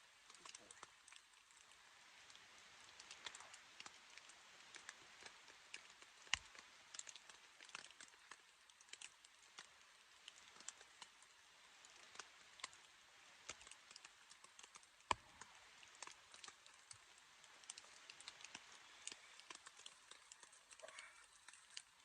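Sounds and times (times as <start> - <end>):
raindrops ticking on tent fabric: 0.0 - 22.0.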